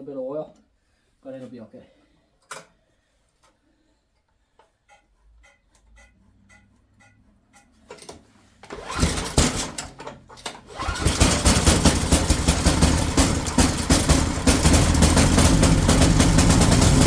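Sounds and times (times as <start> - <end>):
snowblower engine running: 8.8 - 9.9, 10.7 - 17.0.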